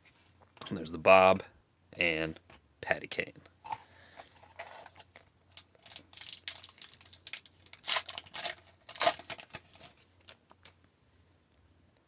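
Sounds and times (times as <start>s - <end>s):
foil wrapper crinkling: 4.5s - 10.8s.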